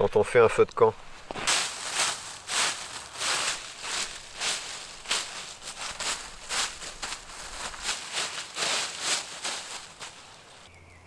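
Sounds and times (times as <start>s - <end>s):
footsteps in dry leaf litter: 0.8s - 10.8s.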